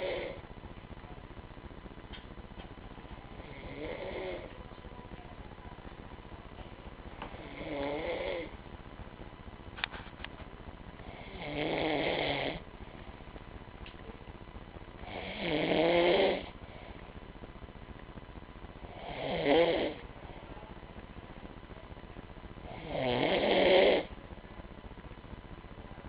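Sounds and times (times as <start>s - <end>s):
man snoring: 0.0s - 0.4s, 3.4s - 4.5s, 7.4s - 8.5s, 11.0s - 12.6s, 15.0s - 16.5s, 18.9s - 20.0s, 22.7s - 24.1s.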